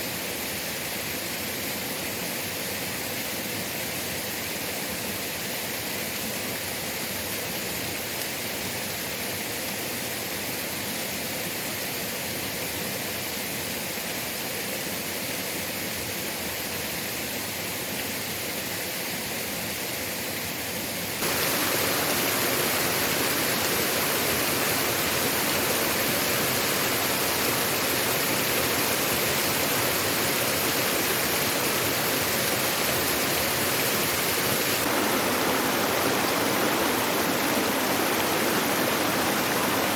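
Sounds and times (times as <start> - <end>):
waterfall rushing: 21.2 - 39.9.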